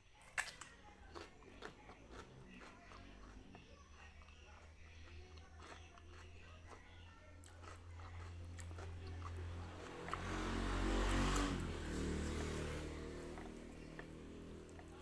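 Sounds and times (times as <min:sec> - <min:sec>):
person chewing food: 0:00.2 - 0:15.0.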